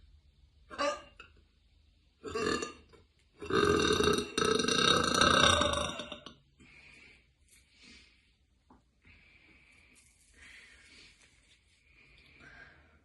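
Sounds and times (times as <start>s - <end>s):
woman burping: 0.7s - 1.3s, 2.2s - 6.4s.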